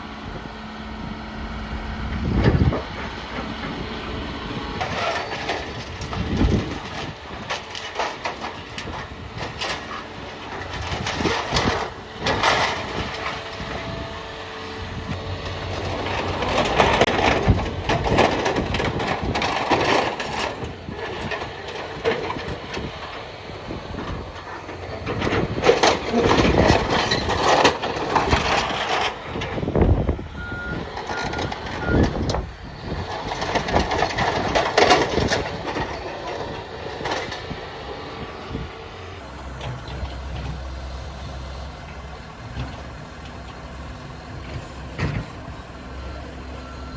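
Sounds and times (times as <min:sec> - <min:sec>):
heavy machinery engines running: 0:00.0 - 0:46.9
machinery knocks and rumbles: 0:01.4 - 0:46.9
reversing alarm beeping: 0:30.3 - 0:32.8, 0:45.9 - 0:46.9.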